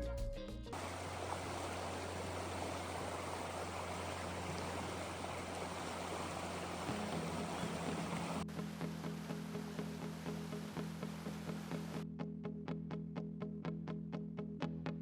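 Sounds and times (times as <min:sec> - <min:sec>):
creek water rushing: 0:00.8 - 0:08.4, 0:09.2 - 0:12.0.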